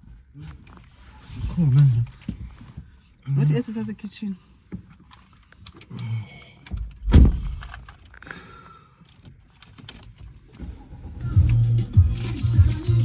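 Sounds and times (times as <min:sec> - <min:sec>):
heavy thump: 0:07.0 - 0:07.7.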